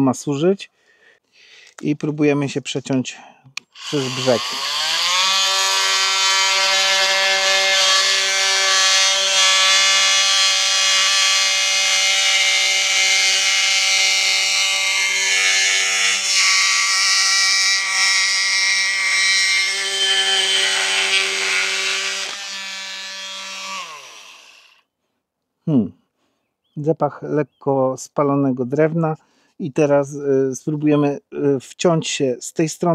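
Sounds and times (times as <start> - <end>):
oscillating multi-tool cutting wood: 3.6 - 24.8.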